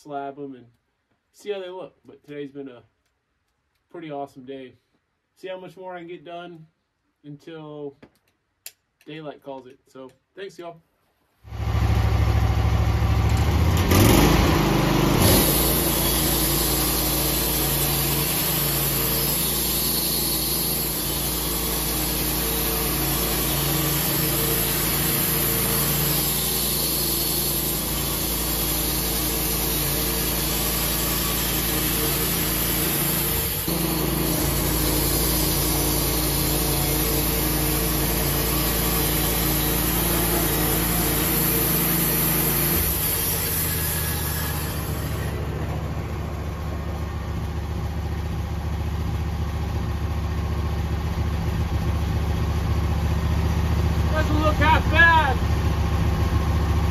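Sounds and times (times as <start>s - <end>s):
band sawmill sawing a log: 11.5s - 47.2s, 54.0s - 56.9s.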